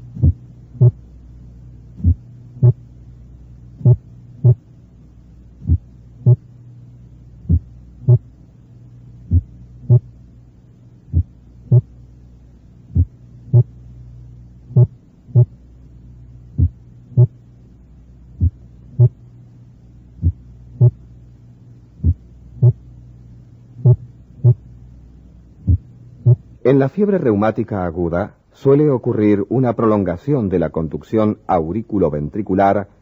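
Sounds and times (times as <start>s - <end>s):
slow heartbeat: 0.0s - 1.0s, 2.0s - 2.9s, 3.8s - 4.7s, 5.6s - 6.5s, 7.4s - 8.3s, 9.2s - 10.1s, 11.0s - 12.0s, 12.9s - 13.8s, 14.7s - 15.6s, 16.5s - 17.5s, 18.4s - 19.2s, 20.2s - 21.0s, 22.0s - 22.9s, 23.8s - 24.7s, 25.6s - 26.5s
steady low hum: 0.0s - 33.0s.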